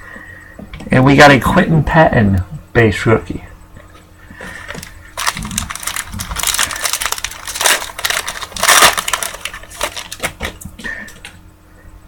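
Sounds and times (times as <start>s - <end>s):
card pack wrapper crinkling: 4.7s - 11.2s.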